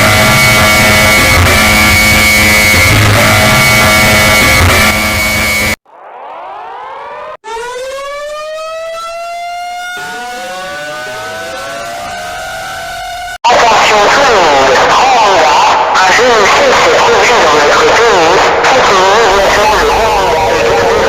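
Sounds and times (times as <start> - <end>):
heavily distorted music: 0.0 - 5.7, 9.4 - 13.4
second siren: 0.0 - 13.4
air-raid siren wailing: 0.0 - 13.5.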